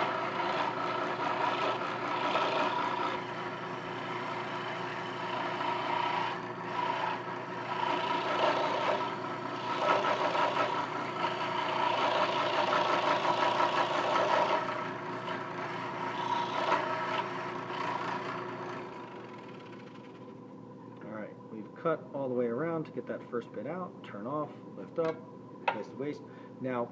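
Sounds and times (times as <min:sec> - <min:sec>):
scroll saw cutting wood: 0:00.0 - 0:20.2.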